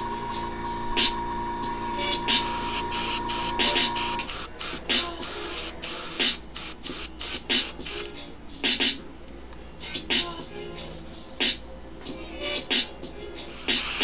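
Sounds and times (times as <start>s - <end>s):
steady hum: 0.0s - 11.4s
airbrush spraying in hissing bursts: 2.2s - 8.1s, 13.5s - 14.0s.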